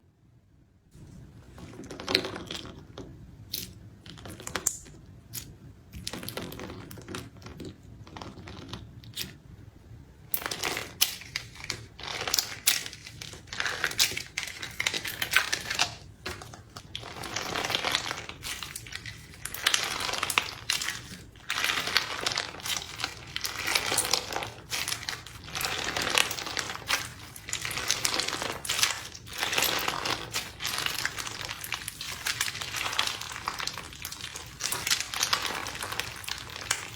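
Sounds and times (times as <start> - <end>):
slime squishing and crackling: 10.3 - 36.9.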